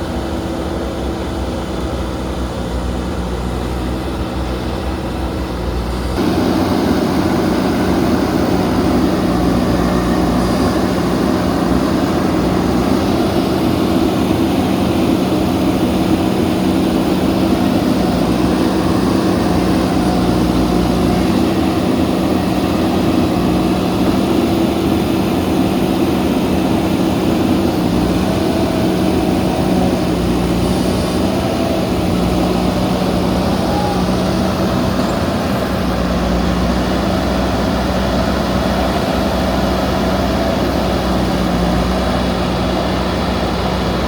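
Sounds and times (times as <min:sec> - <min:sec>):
diesel engine humming: 0:00.0 - 0:44.0.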